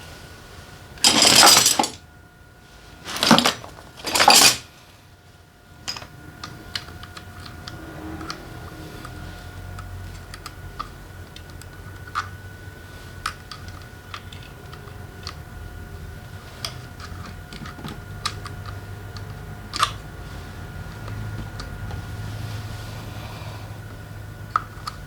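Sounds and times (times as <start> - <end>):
steady low hum: 0.0 - 25.0
metal tools clicking and clinking: 1.0 - 2.0, 3.1 - 4.7, 5.8 - 6.2.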